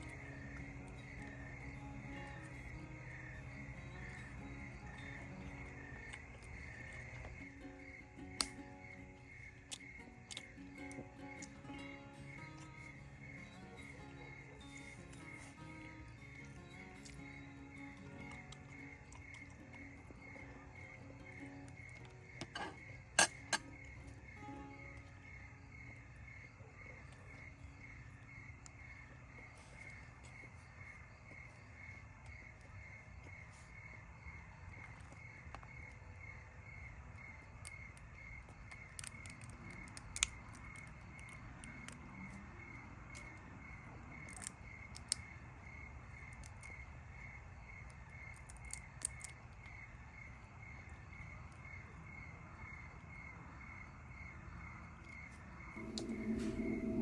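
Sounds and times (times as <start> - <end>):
low outdoor rumble: 0.0 - 35.1, 49.5 - 57.0
insect chirping: 0.0 - 57.0.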